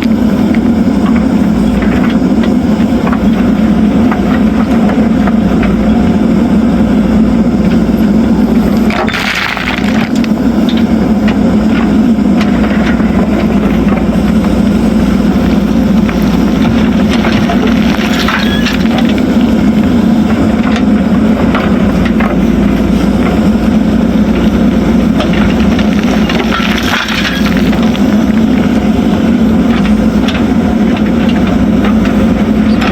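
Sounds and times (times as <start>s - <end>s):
backhoe diesel engine running: 0.0s - 32.9s
gravel rushing: 0.0s - 32.9s
stones clacking: 8.9s - 10.9s, 25.2s - 28.6s.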